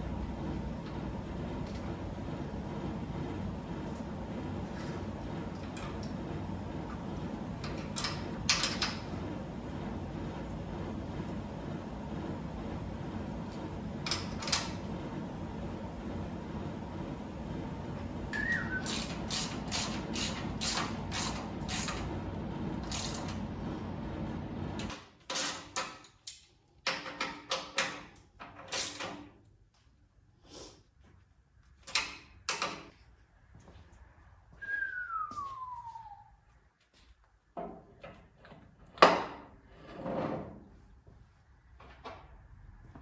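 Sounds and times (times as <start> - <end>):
steady noise: 0.0 - 24.9
knocks and clanks of hand tools: 7.6 - 9.1, 18.4 - 22.1, 24.8 - 29.4
short falling whistle: 18.3 - 19.0, 34.6 - 36.4.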